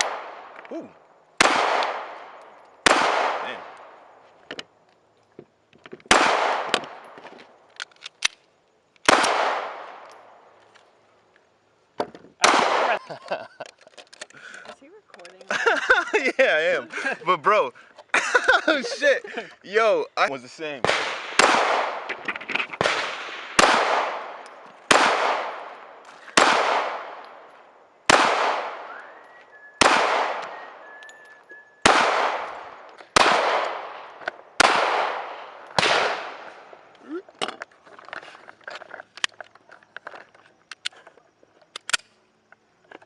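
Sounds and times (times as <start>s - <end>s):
gunshots with echo: 1.4s - 3.8s, 6.1s - 7.0s, 12.4s - 13.0s, 20.8s - 22.1s, 22.8s - 27.2s, 28.1s - 28.9s, 29.8s - 30.8s, 31.8s - 36.6s.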